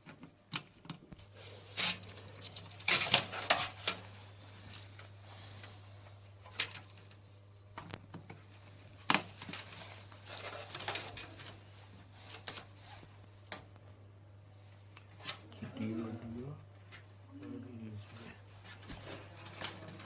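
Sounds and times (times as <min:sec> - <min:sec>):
steady low hum: 0:00.1 - 0:20.0
rustling: 0:07.9 - 0:13.6, 0:14.5 - 0:20.0.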